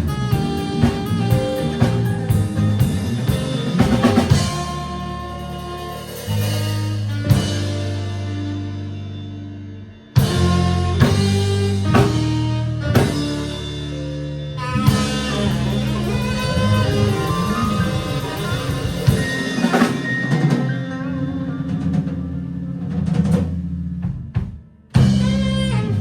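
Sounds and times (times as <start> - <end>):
live band playing: 0.0 - 26.0.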